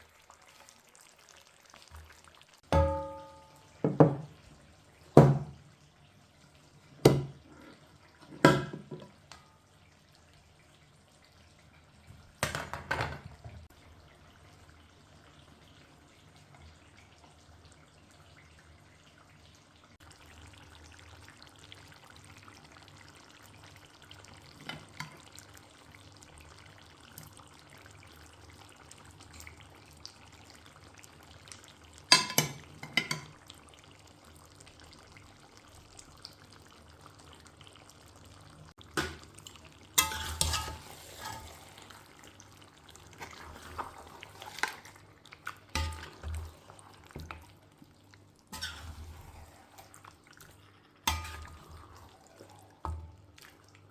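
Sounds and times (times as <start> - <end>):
food sizzling in a pan: 0.0 - 12.6, 13.7 - 53.9
spoon scraping against pan: 40.0 - 42.1, 43.2 - 45.0, 48.5 - 50.0, 51.0 - 52.1.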